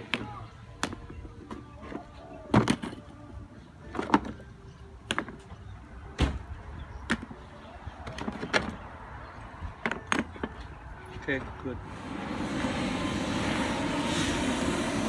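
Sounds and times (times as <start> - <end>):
steady low hum: 11.8 - 15.0.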